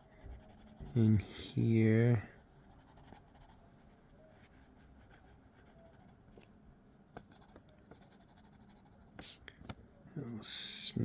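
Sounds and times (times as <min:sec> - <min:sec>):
pen strokes on paper: 0:00.0 - 0:01.5, 0:02.1 - 0:06.2.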